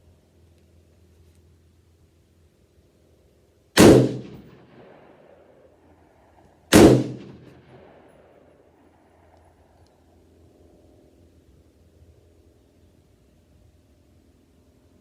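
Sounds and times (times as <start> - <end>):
rifle shots with echo: 3.8 - 5.6, 6.7 - 9.3.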